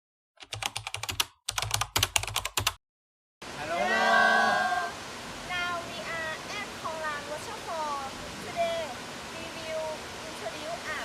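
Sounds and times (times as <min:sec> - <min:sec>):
computer keyboard typing: 0:00.4 - 0:02.8
waterfall rushing: 0:03.4 - 0:11.0
long held call: 0:03.5 - 0:05.0.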